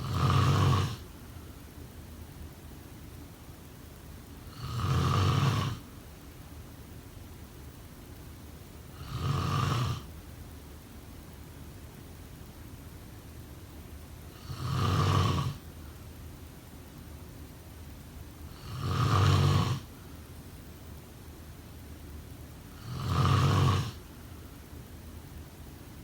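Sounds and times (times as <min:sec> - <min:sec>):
person snoring: 0:00.0 - 0:01.0, 0:04.5 - 0:05.8, 0:09.0 - 0:10.1, 0:14.4 - 0:15.6, 0:18.6 - 0:19.9, 0:22.8 - 0:24.0
faint steady hiss: 0:00.0 - 0:26.0.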